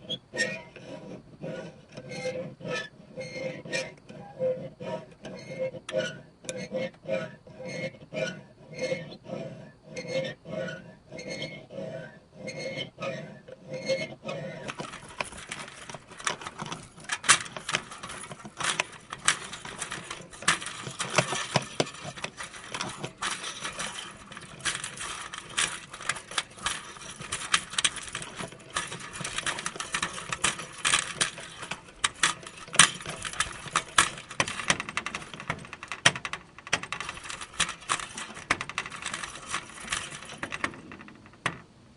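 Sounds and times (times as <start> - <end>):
spring rattling and clinking: 14.0 - 41.7
door spring twanging: 14.4 - 41.7.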